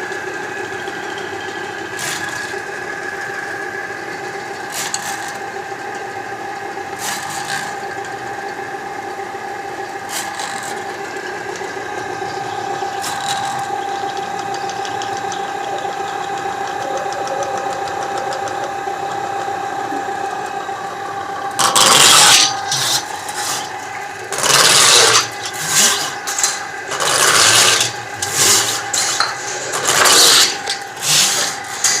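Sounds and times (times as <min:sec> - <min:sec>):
drain-cleaning machine humming: 0:00.0 - 0:32.0
loud rasping bursts: 0:21.5 - 0:32.0.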